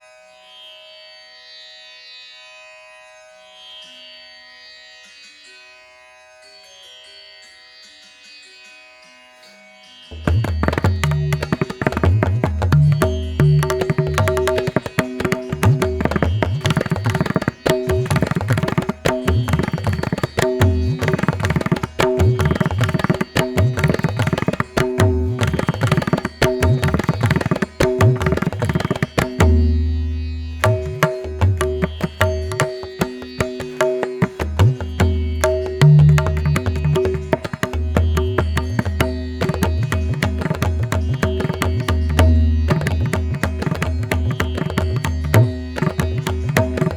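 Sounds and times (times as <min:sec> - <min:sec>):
hand drum strokes: 0:10.2 - 0:46.9.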